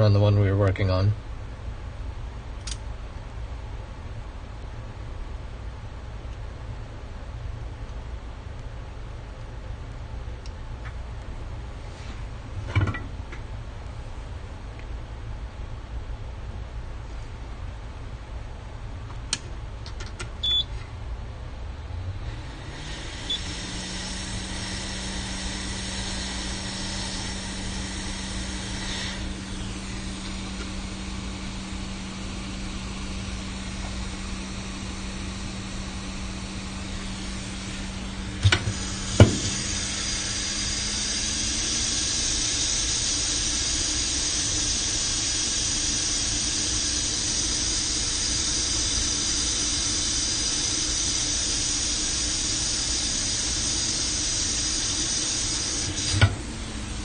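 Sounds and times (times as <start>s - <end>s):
hot air blower hissing: 21.9s - 57.0s.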